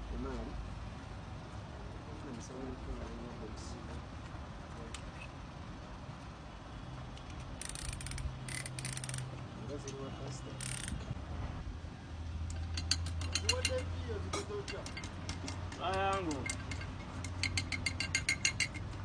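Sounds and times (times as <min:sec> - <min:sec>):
ratchet wrench clicking: 0:07.2 - 0:09.3, 0:10.6 - 0:11.0, 0:12.5 - 0:19.0.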